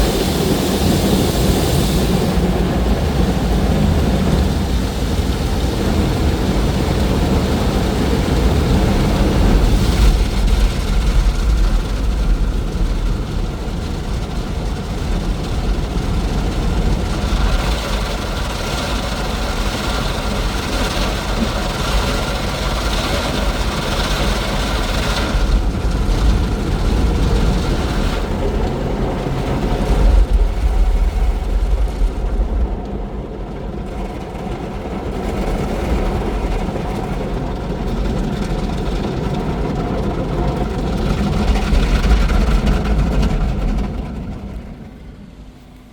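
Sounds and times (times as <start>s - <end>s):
hissing water spray: 0.0s - 12.4s
car wash machine rumble: 0.0s - 45.9s.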